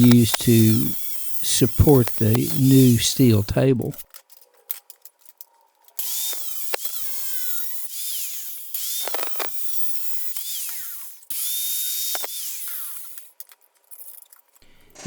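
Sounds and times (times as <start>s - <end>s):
power tool grinding steel: 0.0s - 3.9s.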